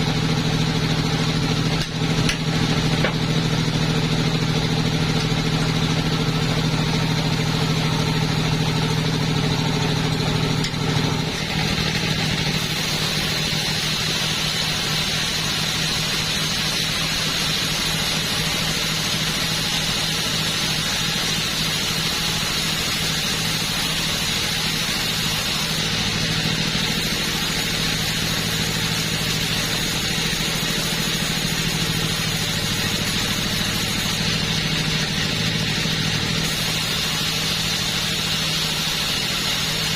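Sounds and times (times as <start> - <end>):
chainsaw engine at high revs: 11.0 - 39.9.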